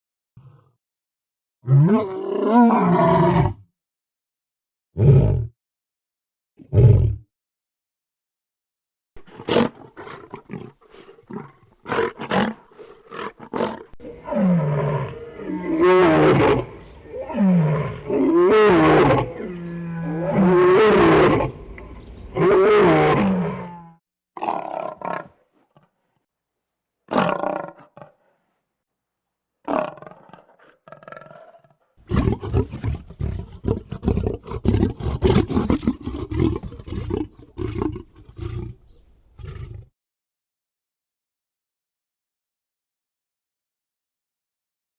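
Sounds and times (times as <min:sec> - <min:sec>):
lion growling: 0:13.0 - 0:25.9, 0:27.1 - 0:28.2, 0:29.7 - 0:39.9
lion roaring: 0:13.1 - 0:25.4, 0:27.1 - 0:28.2, 0:29.7 - 0:39.9
lion grunts: 0:14.0 - 0:23.8, 0:29.7 - 0:39.9.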